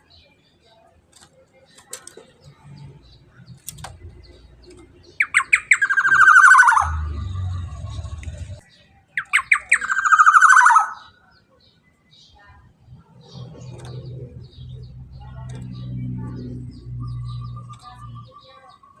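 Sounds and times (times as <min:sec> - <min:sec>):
bird calling: 0:03.3 - 0:08.6, 0:09.2 - 0:11.2
low rumble: 0:06.9 - 0:08.6.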